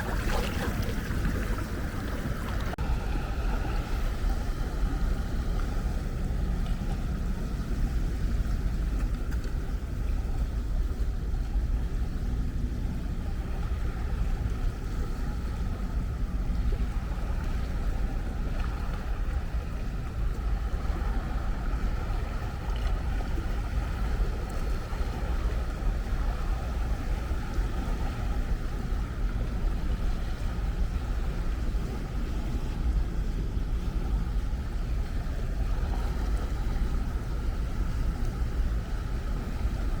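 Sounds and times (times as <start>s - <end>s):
ocean waves rushing: 0.0s - 6.3s.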